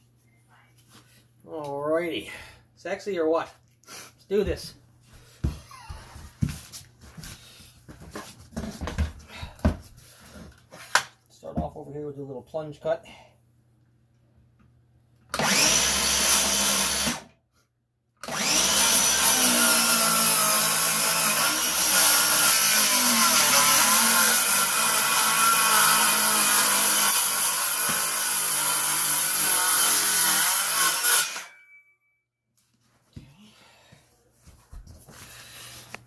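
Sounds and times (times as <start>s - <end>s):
circular saw cutting wood: 15.4s - 17.3s, 18.2s - 31.7s.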